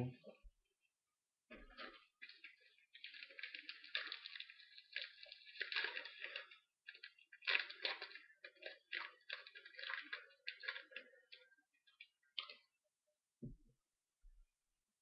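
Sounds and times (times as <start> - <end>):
foil wrapper crinkling: 1.8 - 12.6.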